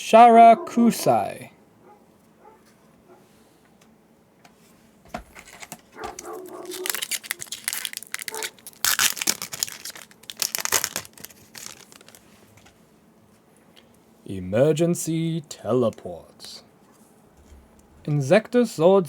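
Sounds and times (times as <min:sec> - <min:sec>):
foil pack tearing and crinkling: 0:05.3 - 0:12.7.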